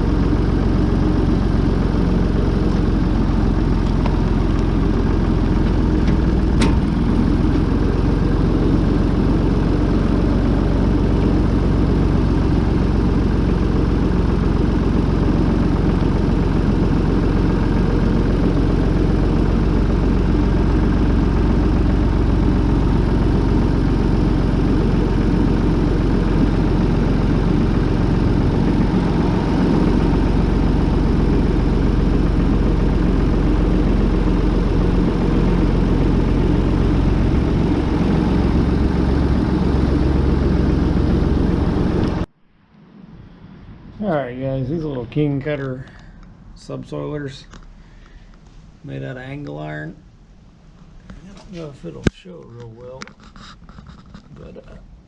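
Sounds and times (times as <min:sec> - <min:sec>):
tractor engine running: 0:00.0 - 0:42.4.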